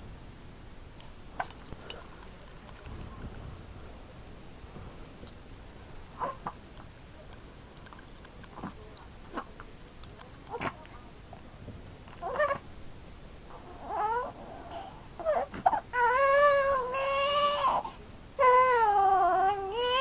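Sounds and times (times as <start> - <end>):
baby whimpering and crying: 13.8 - 20.0.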